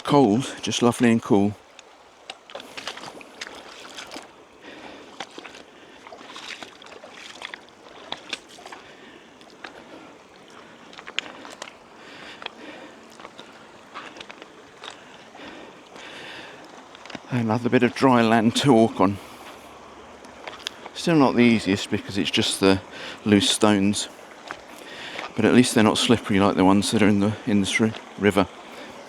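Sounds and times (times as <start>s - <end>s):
stream running: 0.0s - 29.0s
water splashing with footsteps: 0.0s - 29.0s.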